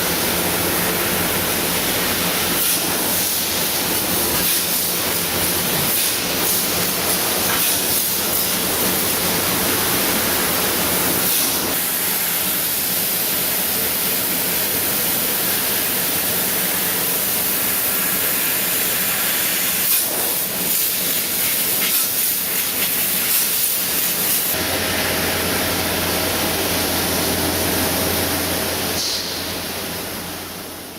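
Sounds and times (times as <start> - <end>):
laser cutter gas hiss: 0.0 - 25.0, 28.9 - 29.8.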